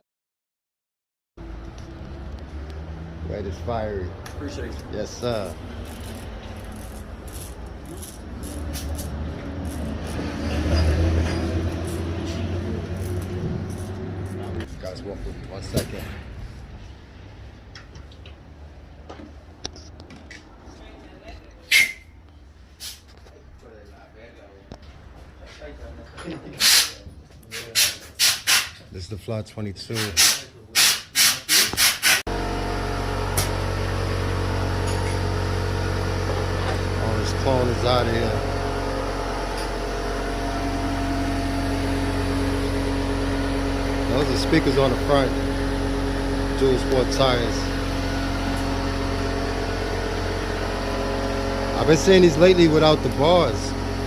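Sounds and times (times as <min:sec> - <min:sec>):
vehicle engine rumbling: 0:01.4 - 0:30.7, 0:32.2 - 0:54.0
steady mechanical hum: 0:01.5 - 0:54.0
rasping strokes: 0:05.2 - 0:14.5.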